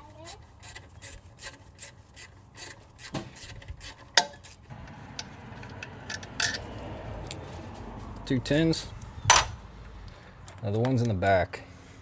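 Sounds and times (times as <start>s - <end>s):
ratchet clicking: 4.2s - 7.6s.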